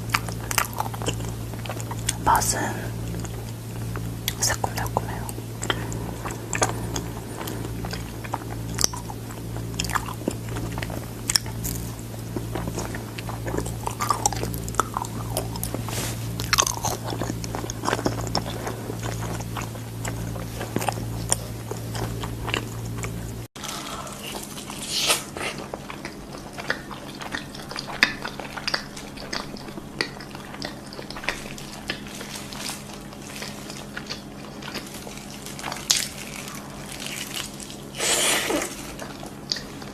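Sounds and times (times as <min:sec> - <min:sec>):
chewing and crunching food: 0:00.0 - 0:39.9
steady low hum: 0:00.0 - 0:39.9
lip smacks: 0:35.8 - 0:39.9.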